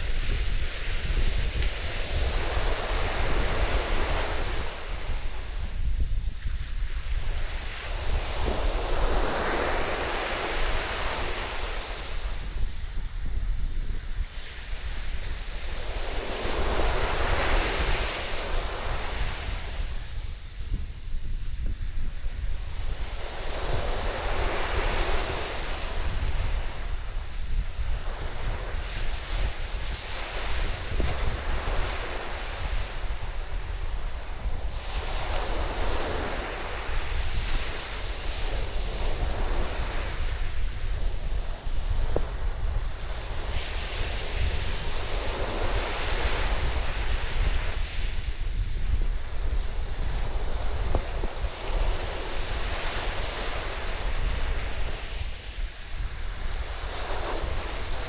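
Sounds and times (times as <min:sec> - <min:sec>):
wind buffeting microphone: 0:00.0 - 0:58.0
surf breaking on sandy beach: 0:22.4 - 0:58.0.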